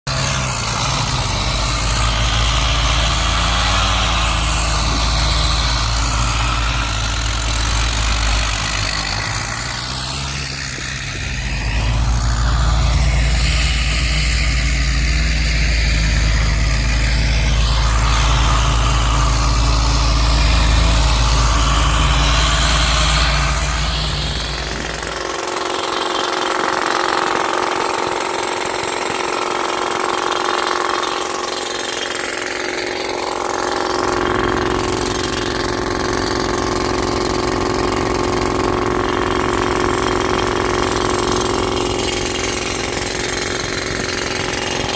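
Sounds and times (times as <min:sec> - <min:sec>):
heavy machinery engine running: 0:00.0 - 0:44.9.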